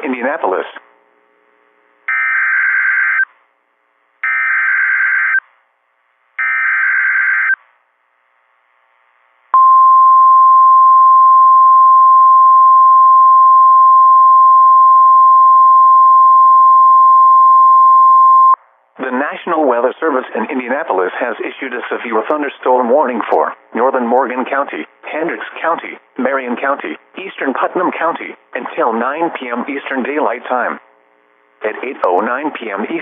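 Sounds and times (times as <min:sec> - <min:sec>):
steady alarm tone: 0:04.2 - 0:05.4, 0:06.4 - 0:07.6.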